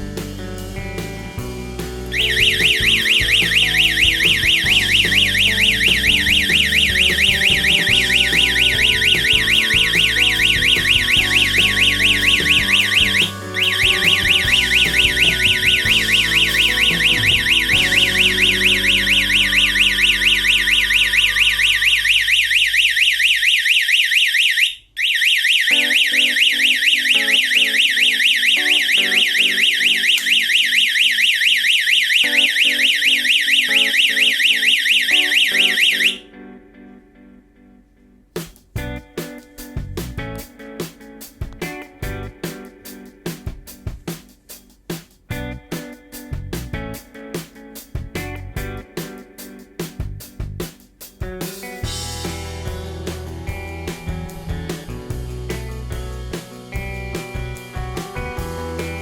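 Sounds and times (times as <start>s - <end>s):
alarm siren rapidly pulsing: 2.1s - 36.2s.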